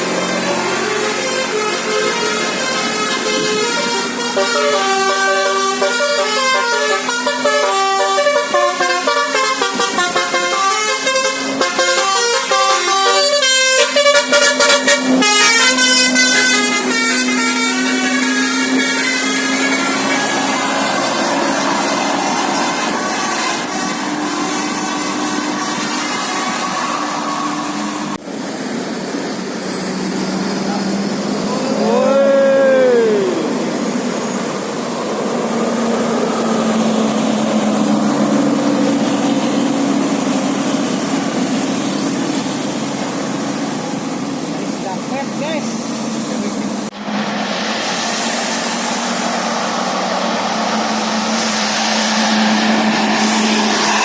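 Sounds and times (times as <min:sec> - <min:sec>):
musical air horn melody: 0:00.0 - 0:28.2
short noisy horn blast: 0:00.0 - 0:28.2
bus engine idling: 0:00.0 - 0:54.0
falling pitched note: 0:46.9 - 0:54.0.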